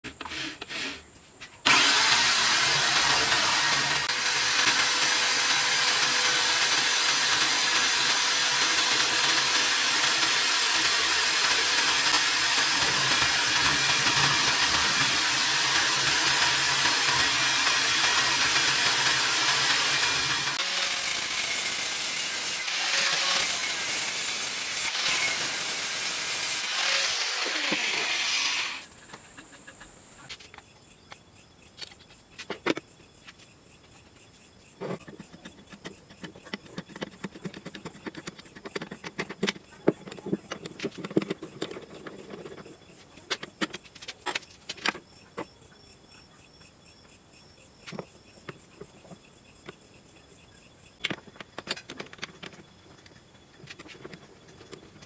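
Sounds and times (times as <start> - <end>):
power tool cutting wood: 1.7 - 28.9
clicks and knocks of parts handled: 30.3 - 33.5, 34.8 - 45.5, 51.0 - 55.0.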